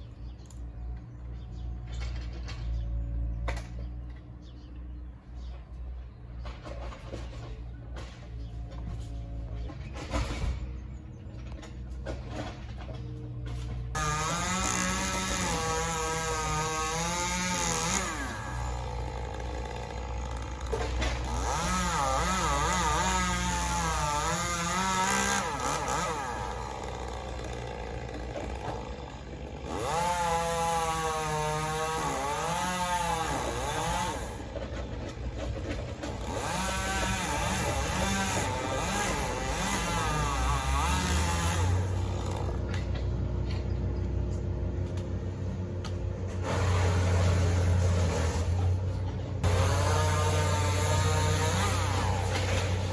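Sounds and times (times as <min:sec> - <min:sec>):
chainsaw revving: 0:13.9 - 0:43.0, 0:46.2 - 0:52.9.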